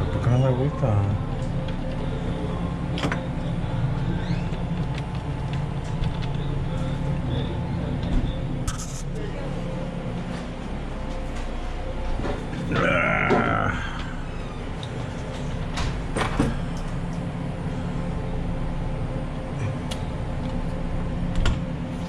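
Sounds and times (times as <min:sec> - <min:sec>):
low mechanical hum: 0:00.0 - 0:22.0
wavering squeal: 0:03.4 - 0:04.8.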